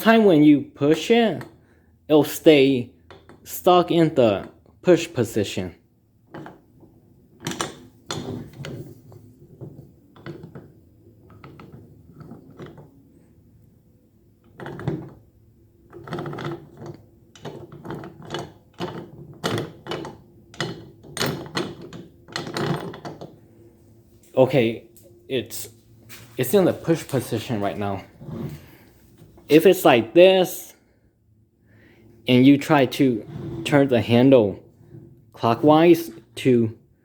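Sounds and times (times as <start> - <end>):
metal clamp clicks and knocks: 6.2 - 12.9, 15.9 - 23.4.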